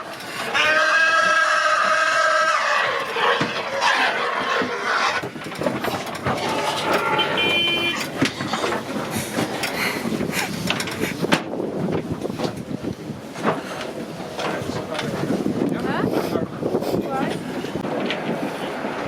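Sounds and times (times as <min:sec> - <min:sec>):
pigs squealing: 0:00.3 - 0:08.7.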